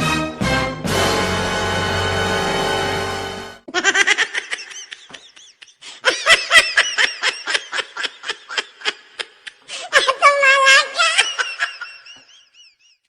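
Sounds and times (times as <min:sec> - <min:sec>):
held musical chord with bass: 0:00.0 - 0:03.7
high-pitched giggling laugh effect: 0:03.7 - 0:12.7.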